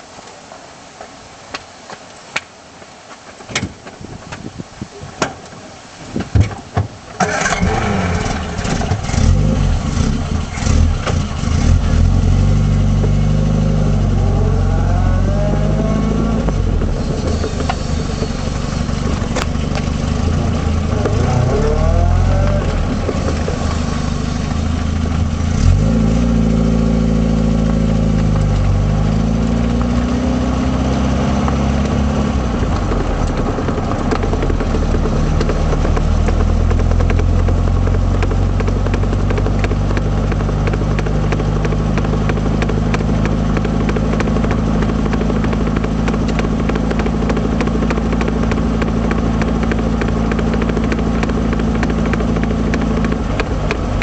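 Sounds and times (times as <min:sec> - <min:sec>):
car engine running: 0:07.2 - 0:54.0
rapid regular knocking: 0:31.5 - 0:54.0.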